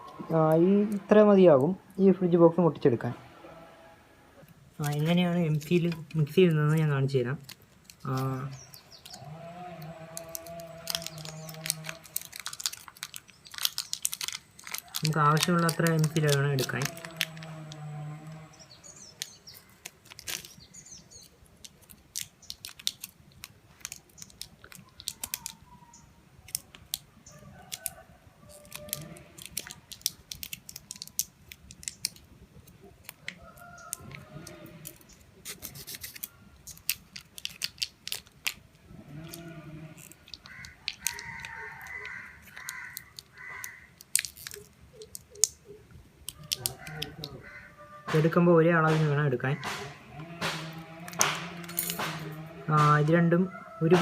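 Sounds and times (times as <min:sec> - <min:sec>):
putty clicking and scraping: 0:28.6 - 0:45.6, 0:48.1 - 0:53.0
bird cawing: 0:39.1 - 0:44.0, 0:46.4 - 0:48.2, 0:49.5 - 0:52.7.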